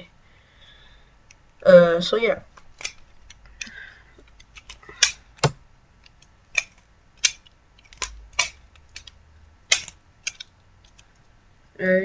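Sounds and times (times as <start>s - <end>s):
wooden butterfly knife clacking: 6.1s - 11.0s.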